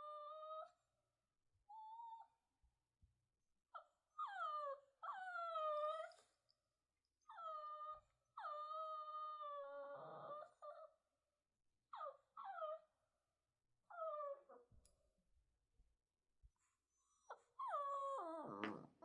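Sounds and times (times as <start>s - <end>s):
puppy whining: 0.0s - 0.8s, 3.7s - 6.4s, 7.2s - 11.0s, 11.9s - 13.0s, 13.8s - 15.0s, 16.7s - 19.0s.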